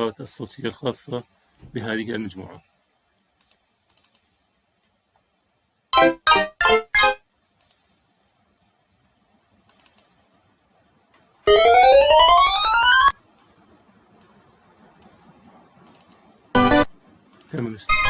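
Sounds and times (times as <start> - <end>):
faint clicks: 3.2 - 5.0, 7.6 - 7.9, 9.6 - 10.2, 15.8 - 16.3, 17.3 - 17.7
synth blips: 6.0 - 7.2, 11.5 - 13.2, 16.6 - 17.0
rising synth sweep: 11.5 - 13.2, 16.6 - 16.9.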